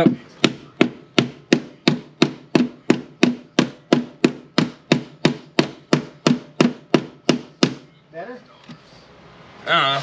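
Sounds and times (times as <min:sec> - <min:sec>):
hammer striking steel panel: 0:00.0 - 0:07.9.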